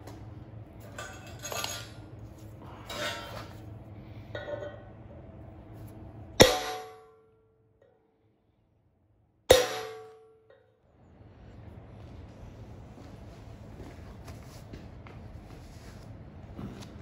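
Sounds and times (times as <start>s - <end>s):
steel parts clinking and scraping: 0.8s - 2.0s, 2.8s - 3.6s
metal strike ringing: 6.4s - 7.4s, 9.5s - 10.6s.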